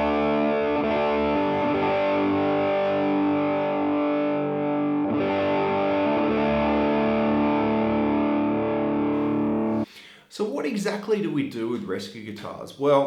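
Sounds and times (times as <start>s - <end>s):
distorted electric guitar chords: 0.0s - 9.8s.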